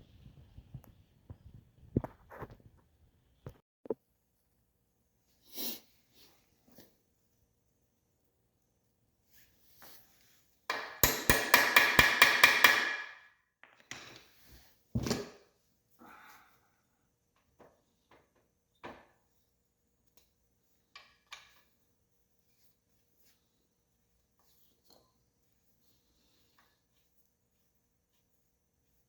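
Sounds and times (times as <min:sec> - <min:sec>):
metal hammer strikes: 0:10.7 - 0:13.3
tools knocking: 0:10.7 - 0:14.2.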